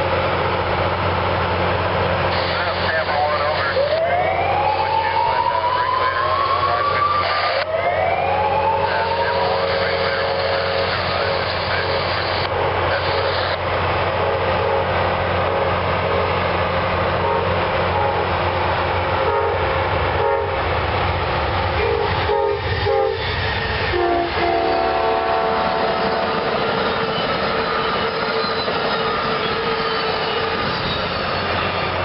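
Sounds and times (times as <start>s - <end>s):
train horn blasts: 9.1s - 13.4s, 14.2s - 16.2s, 17.2s - 18.3s, 19.2s - 20.6s, 21.8s - 23.2s, 23.9s - 26.7s.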